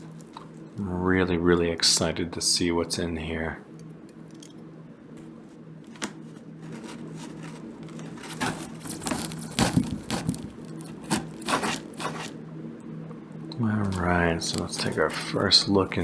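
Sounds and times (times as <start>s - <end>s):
steady low hum: 0.0s - 16.0s
cardboard scraping and tearing: 5.9s - 12.4s, 13.7s - 16.0s.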